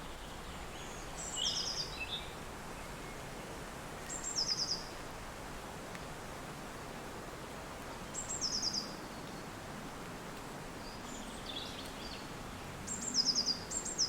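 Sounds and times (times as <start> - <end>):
songbird singing: 0.0 - 5.0, 7.4 - 9.6, 10.4 - 14.0.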